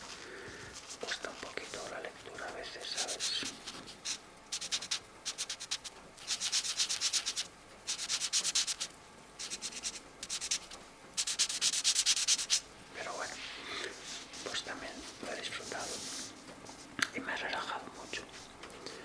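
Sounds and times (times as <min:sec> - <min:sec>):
marker scratching on paper: 0:02.9 - 0:12.7.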